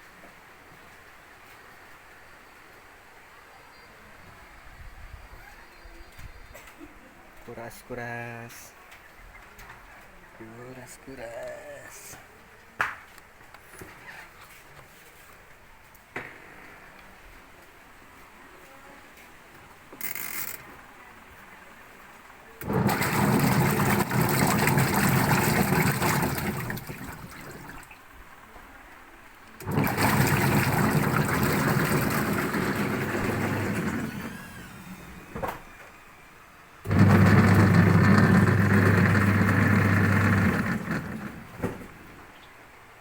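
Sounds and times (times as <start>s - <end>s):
washing machine motor running: 22.6s - 28.0s, 29.6s - 35.6s, 36.8s - 42.1s
water churning in tub: 22.6s - 28.1s, 29.6s - 35.4s, 36.8s - 42.2s.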